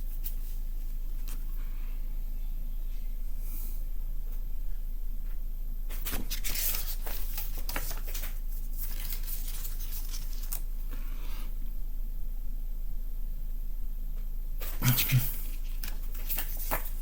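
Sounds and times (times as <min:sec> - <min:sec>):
steady low hum: 0:00.0 - 0:17.0
paper pages rustling: 0:05.9 - 0:10.7, 0:14.6 - 0:17.0.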